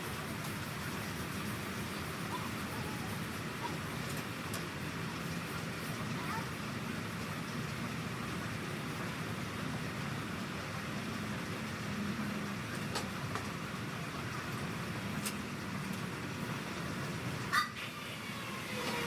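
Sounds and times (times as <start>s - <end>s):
sawmill machinery humming: 0.0s - 19.0s.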